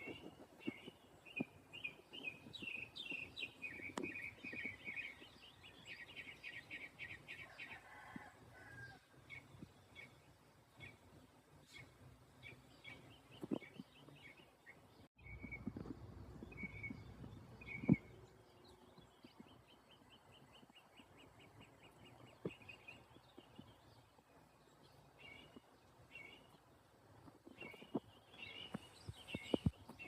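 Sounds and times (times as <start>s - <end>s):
birds chirping: 0.0s - 10.2s, 10.8s - 30.0s.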